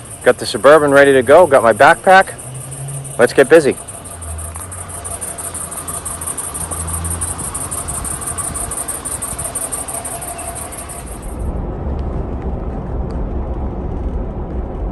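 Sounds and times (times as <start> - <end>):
insects chirping: 0.0 - 11.5
low rumble: 3.8 - 14.9.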